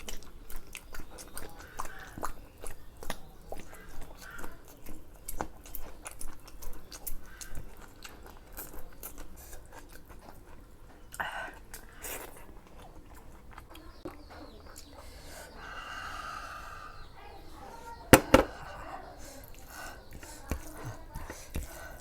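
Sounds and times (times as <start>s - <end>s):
person chewing food: 0.0s - 14.9s.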